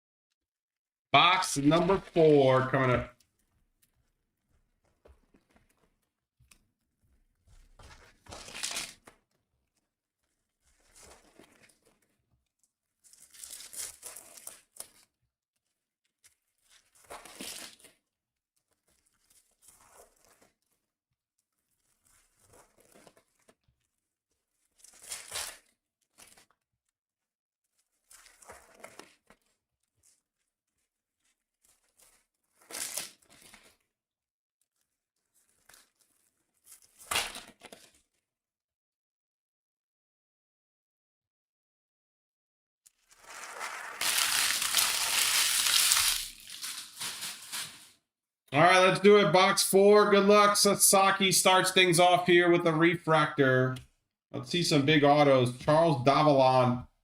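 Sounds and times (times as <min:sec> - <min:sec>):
packaging tearing and crinkling: 0:08.3 - 0:09.2, 0:13.0 - 0:15.1, 0:16.2 - 0:18.0, 0:24.5 - 0:26.6, 0:31.6 - 0:33.8, 0:34.8 - 0:38.0, 0:43.0 - 0:48.0.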